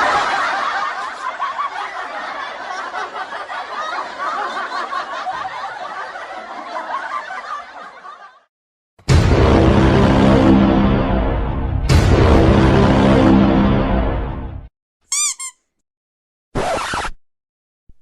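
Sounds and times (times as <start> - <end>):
laughter: 0.0 - 8.5
music: 9.0 - 14.7.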